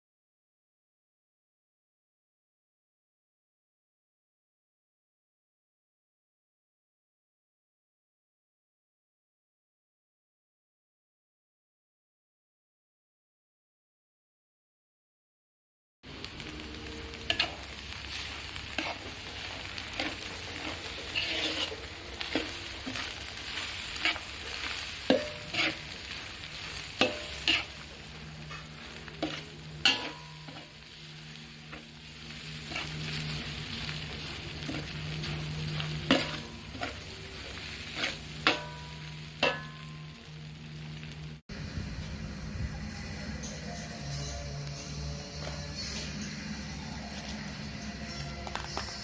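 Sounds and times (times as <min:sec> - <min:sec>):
food sizzling in a pan: 0:16.1 - 0:41.4
steady low hum: 0:39.6 - 0:47.9.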